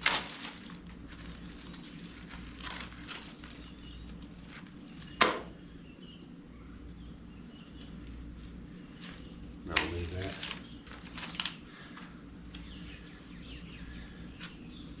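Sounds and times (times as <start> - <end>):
sharp loud knock: 5.2 - 5.5.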